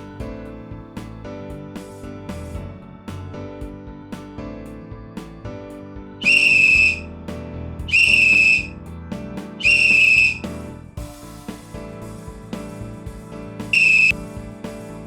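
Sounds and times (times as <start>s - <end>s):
loud whistle blasts: 6.2s - 7.0s, 7.9s - 8.7s, 9.6s - 10.5s, 13.8s - 14.2s.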